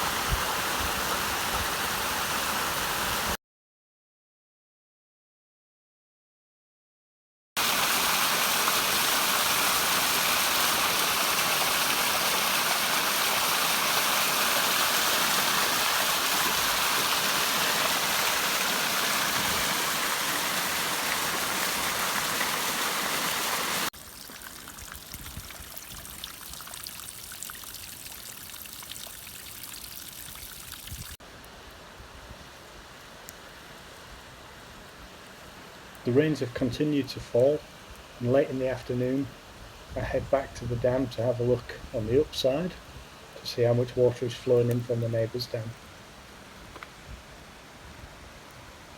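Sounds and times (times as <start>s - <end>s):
water rushing from pipe: 0.0s - 3.4s, 7.6s - 31.2s
running water: 7.6s - 31.2s.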